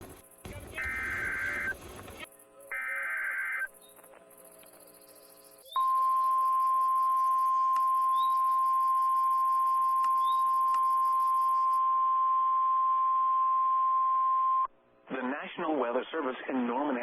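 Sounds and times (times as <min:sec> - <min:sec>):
high-pitched warning tone: 0:00.5 - 0:01.8, 0:05.6 - 0:11.8.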